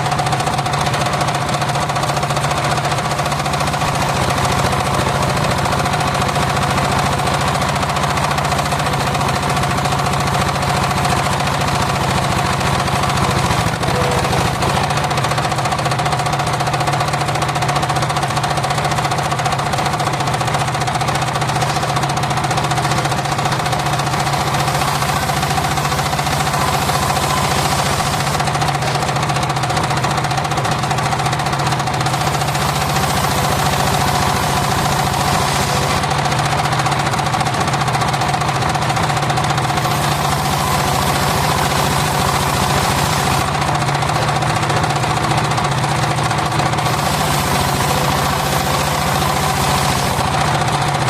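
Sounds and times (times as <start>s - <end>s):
engine running: 0.0s - 51.0s
saw blade whine: 2.4s - 16.1s, 21.0s - 51.0s.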